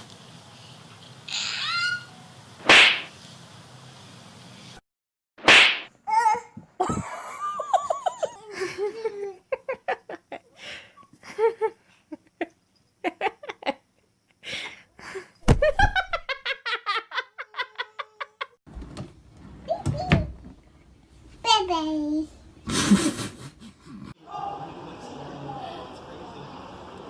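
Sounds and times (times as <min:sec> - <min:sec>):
laughter in short bursts: 0:22.7 - 0:24.0.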